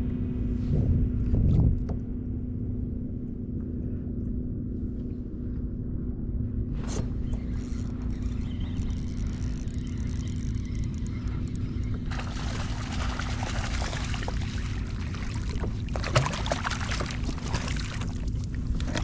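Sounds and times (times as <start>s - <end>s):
wind rumble on microphone: 0.0s - 19.0s
water splashing and sloshing: 7.0s - 19.0s.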